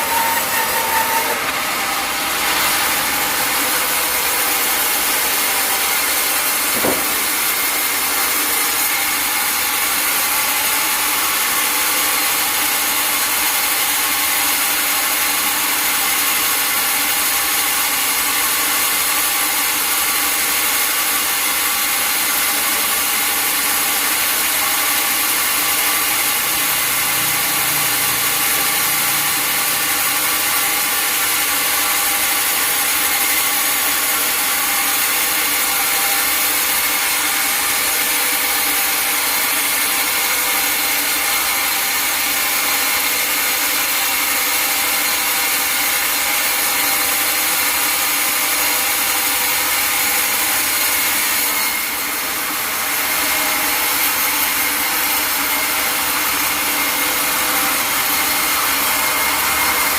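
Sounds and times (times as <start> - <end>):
sawmill saw cutting log: 0.0 - 59.9.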